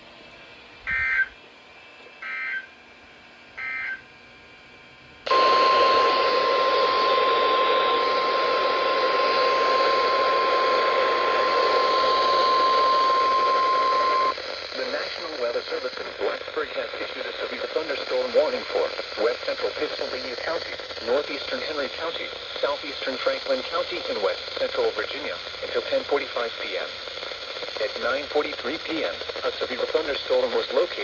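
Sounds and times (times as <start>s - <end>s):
steady warning alarm tone: 0.9s - 1.4s, 2.2s - 2.7s, 3.5s - 4.1s, 5.3s - 22.2s
warbling data bursts: 5.3s - 21.4s
radio static: 5.3s - 31.0s.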